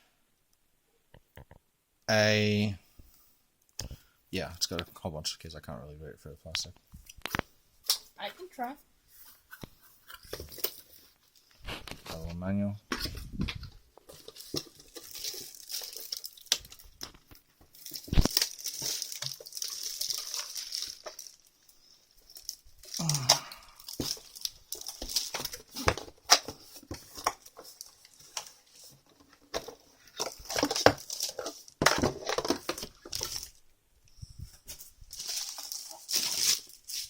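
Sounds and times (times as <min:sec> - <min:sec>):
plastic packaging crinkling: 0:13.0 - 0:33.6, 0:34.5 - 0:37.0.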